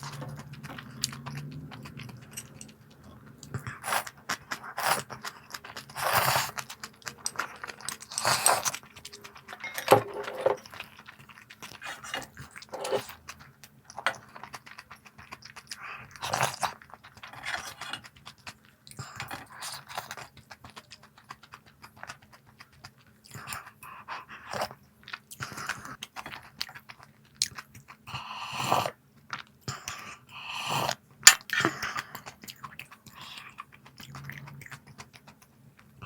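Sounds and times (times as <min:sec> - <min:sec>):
person chewing crunchy snack: 0:00.0 - 0:22.7.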